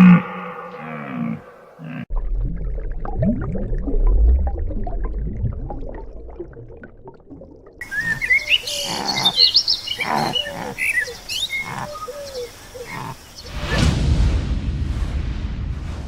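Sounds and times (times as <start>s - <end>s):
birds chirping: 0.0s - 2.1s, 7.8s - 13.6s
loud rushing noise: 13.5s - 16.0s.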